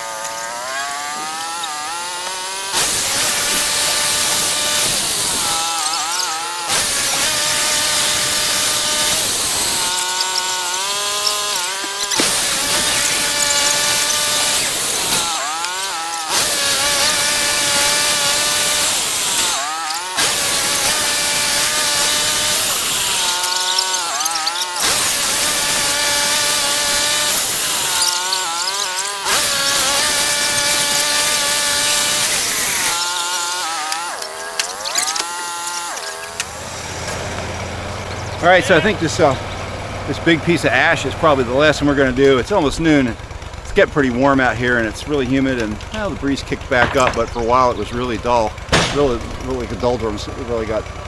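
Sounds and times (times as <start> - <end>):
band blade cutting log: 0.0 - 39.2
sawmill engine whine: 0.0 - 51.0.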